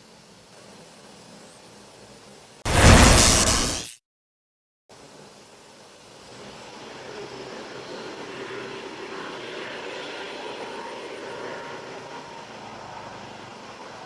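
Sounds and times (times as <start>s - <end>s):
engine drone: 6.3s - 14.0s.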